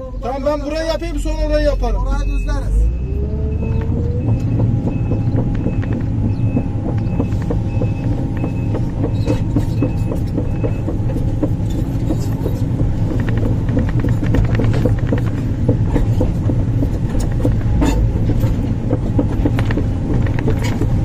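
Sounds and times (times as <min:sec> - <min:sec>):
excavator diesel engine running: 0:00.0 - 0:21.0
short high beeps: 0:02.0 - 0:05.1
machine clicks and clanks: 0:03.7 - 0:21.0.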